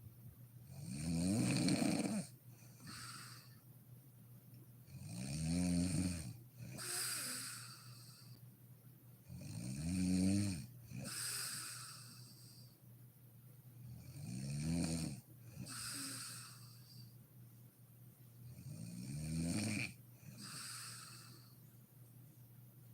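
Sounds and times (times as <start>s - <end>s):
woman snoring: 0.7s - 3.6s, 4.9s - 8.4s, 9.3s - 12.7s, 14.0s - 17.1s, 18.5s - 21.6s
hissing breath: 6.8s - 8.4s.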